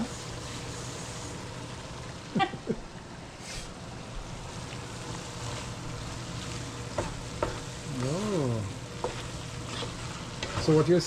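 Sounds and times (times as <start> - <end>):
food sizzling in a pot: 0.0 - 11.0.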